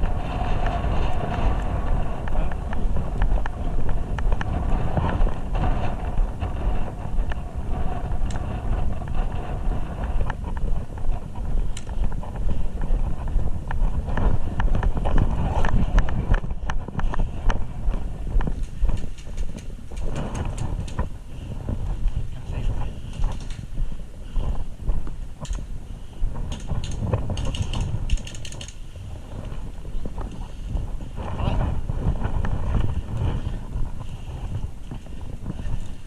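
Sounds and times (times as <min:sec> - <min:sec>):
microphone handling noise: 0:00.0 - 0:36.0
rumbling wind: 0:00.0 - 0:36.0
small clicks and knocks: 0:18.4 - 0:21.1, 0:23.1 - 0:23.7, 0:25.4 - 0:25.7, 0:26.5 - 0:28.8.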